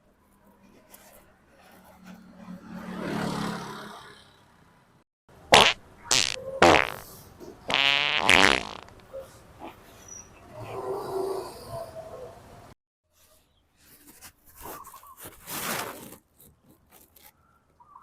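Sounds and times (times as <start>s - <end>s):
fart noises: 5.5s - 7.0s, 7.7s - 9.0s.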